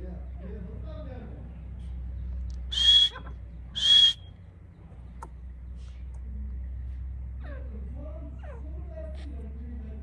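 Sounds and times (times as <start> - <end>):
bird whistled calls: 2.7 - 4.3.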